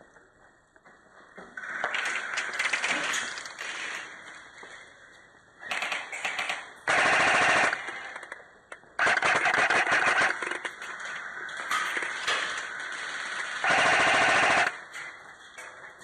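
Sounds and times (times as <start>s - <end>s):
airsoft guns firing bursts: 1.9s - 4.0s, 5.6s - 8.4s, 9.0s - 11.1s, 11.7s - 14.9s.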